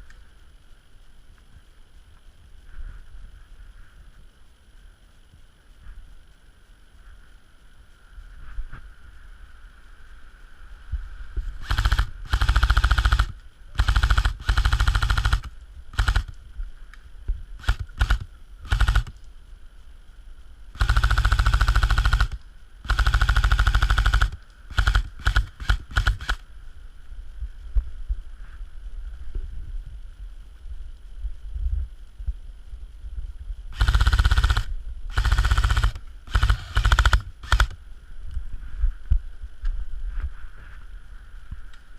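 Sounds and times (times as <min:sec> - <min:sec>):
airsoft gun full auto bursts: 0:11.6 - 0:16.4, 0:17.6 - 0:19.2, 0:20.7 - 0:26.4, 0:33.7 - 0:37.8.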